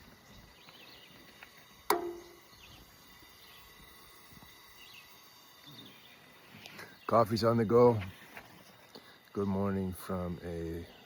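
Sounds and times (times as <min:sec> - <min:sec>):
faint bird chirps: 0:02.0 - 0:09.7.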